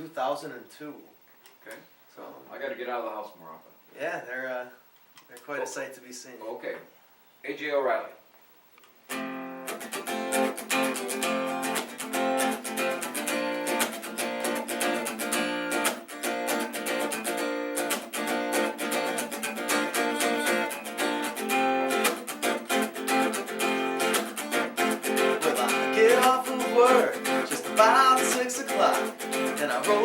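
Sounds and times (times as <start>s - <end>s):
acoustic guitar strumming chords: 9.1s - 30.0s.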